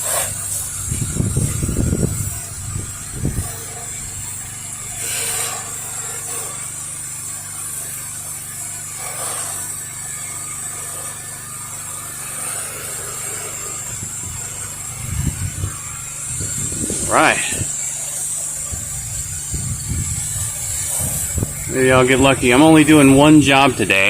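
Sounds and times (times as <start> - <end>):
high spray hiss: 0.0 - 24.0
pressure washer motor running: 0.0 - 24.0
rush of noise: 13.9 - 17.8.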